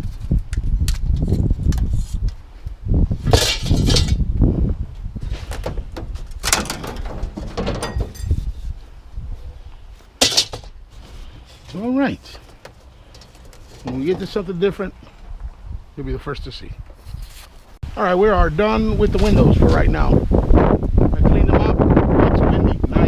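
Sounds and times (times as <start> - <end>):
wind buffeting microphone: 0.0 - 10.1, 13.9 - 23.0
metal rattling and scraping: 3.2 - 4.3, 5.2 - 8.8, 10.2 - 14.8
metal window frames clattering: 3.3 - 4.2, 5.6 - 8.4, 10.2 - 10.8.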